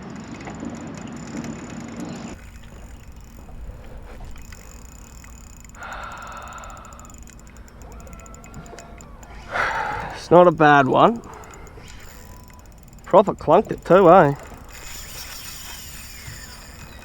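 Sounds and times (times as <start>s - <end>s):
boat noise: 0.0s - 17.0s
wind: 0.0s - 17.0s
fishing reel ticking and whirring: 0.1s - 17.0s.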